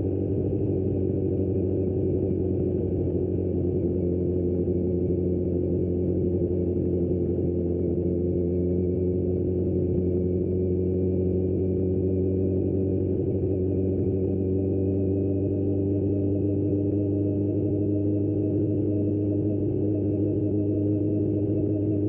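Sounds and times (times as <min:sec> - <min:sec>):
motorcycle engine droning: 0:00.0 - 0:22.0.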